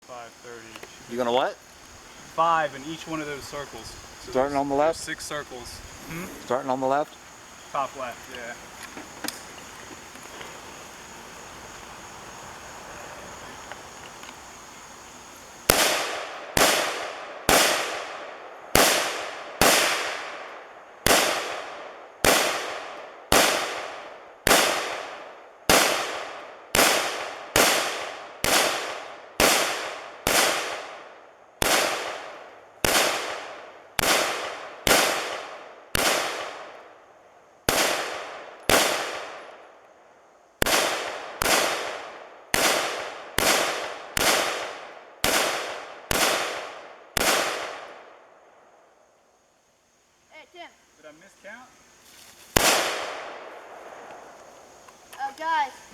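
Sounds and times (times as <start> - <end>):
rifle shots echoing: 15.6 - 36.9, 37.7 - 39.6, 40.6 - 48.2, 52.6 - 54.4.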